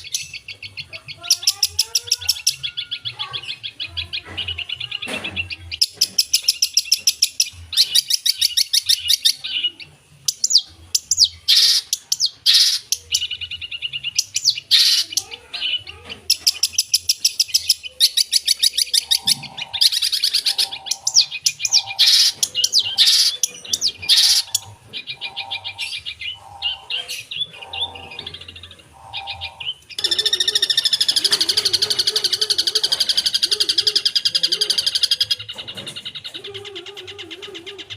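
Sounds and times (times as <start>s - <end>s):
bird singing trills and chirps: 0.0s - 37.9s.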